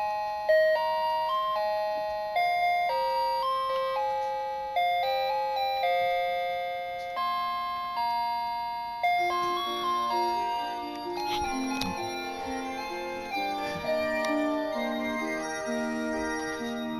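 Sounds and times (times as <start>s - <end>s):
clock chime melody: 0.0s - 16.9s.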